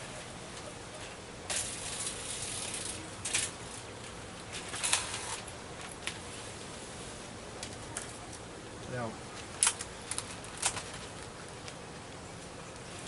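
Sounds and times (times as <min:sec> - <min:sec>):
scraping and crinkling: 0:01.0 - 0:06.6, 0:09.3 - 0:11.8
packaging rustle: 0:09.4 - 0:11.8.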